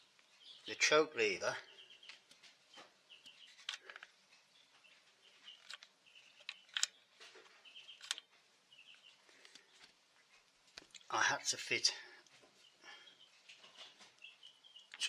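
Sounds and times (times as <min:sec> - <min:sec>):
small birds chirping: 0:00.0 - 0:15.0
sharp clicks: 0:05.6 - 0:07.0, 0:08.0 - 0:08.3.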